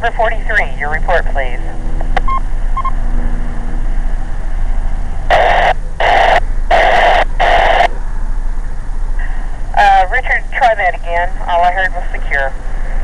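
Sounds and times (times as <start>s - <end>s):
radio hum and hiss: 0.0s - 2.9s, 3.5s - 13.0s
loud bursts of radio noise: 5.3s - 7.9s.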